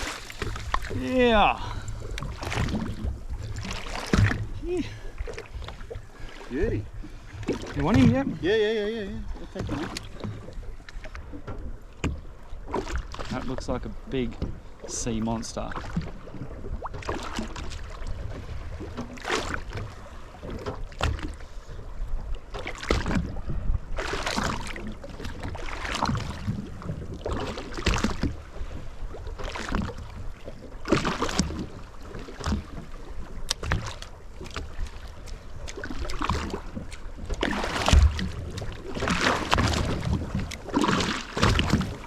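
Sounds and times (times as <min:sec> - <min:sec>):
water splashes: 0:00.0 - 0:21.6, 0:22.2 - 0:42.0
water sloshing against boat hull: 0:00.0 - 0:42.0
low rumble: 0:41.4 - 0:42.0.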